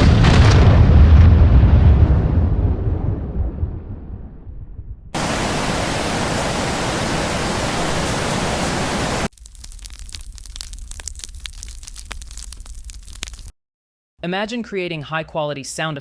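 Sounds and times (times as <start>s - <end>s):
explosion rumble: 0.0s - 5.8s
loud steady hiss: 5.2s - 9.3s
dense crackling: 9.0s - 13.5s.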